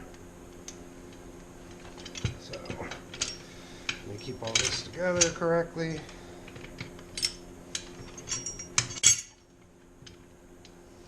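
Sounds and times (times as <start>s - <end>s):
metal pins clinking: 1.8s - 10.2s.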